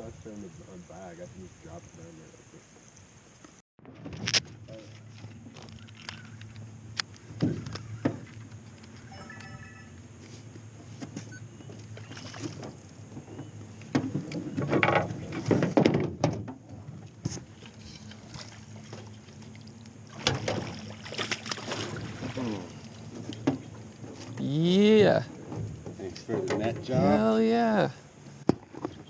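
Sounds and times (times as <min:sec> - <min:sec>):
scuffling and splashing in boat: 0:10.2 - 0:27.7.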